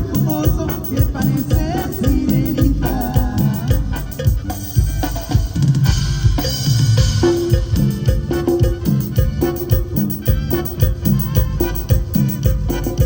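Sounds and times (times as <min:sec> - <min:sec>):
live dance band playing: 0:00.0 - 0:13.0.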